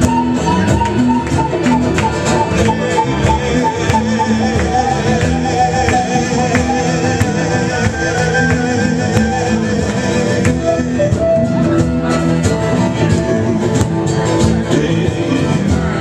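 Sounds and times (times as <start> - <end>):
live rock band playing: 0.0 - 16.0.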